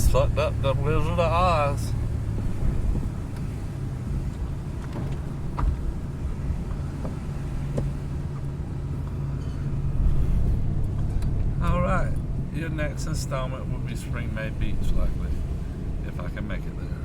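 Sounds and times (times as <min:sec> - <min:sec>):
engine and road rumble: 0:00.0 - 0:17.0
strong wind: 0:01.9 - 0:07.6.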